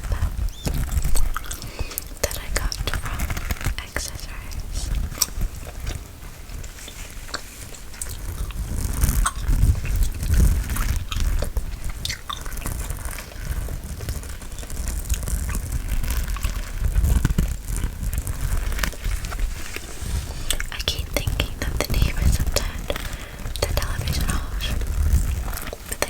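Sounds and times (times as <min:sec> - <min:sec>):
gum chewing: 0:00.0 - 0:13.7, 0:18.4 - 0:26.0
wet mouth clicks and smacks: 0:06.6 - 0:12.9
hands brushing microphone: 0:18.4 - 0:26.0.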